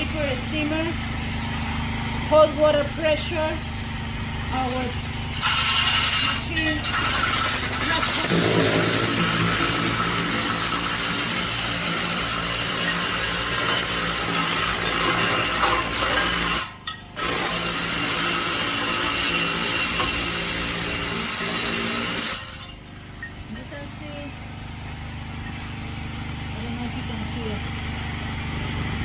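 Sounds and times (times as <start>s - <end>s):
pressure washer machine hum: 0.0s - 29.0s
water spray hissing: 3.1s - 16.5s.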